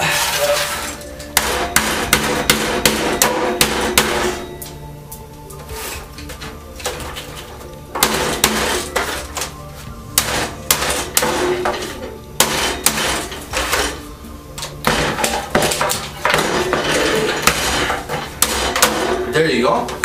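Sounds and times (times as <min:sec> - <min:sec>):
background music: 0:00.0 - 0:20.0
hard objects knocking and clattering: 0:14.6 - 0:20.0.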